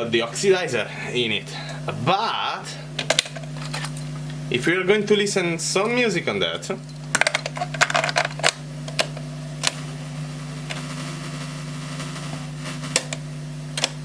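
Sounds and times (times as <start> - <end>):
steady low hum: 0.0 - 14.0
cassette deck mechanism clicks: 3.0 - 4.4, 6.9 - 9.9, 12.8 - 14.0.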